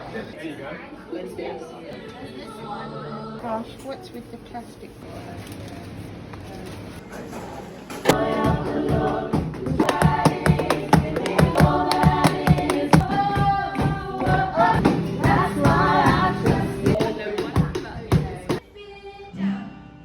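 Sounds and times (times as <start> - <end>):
voices singing over a beat: 8.0 - 19.1.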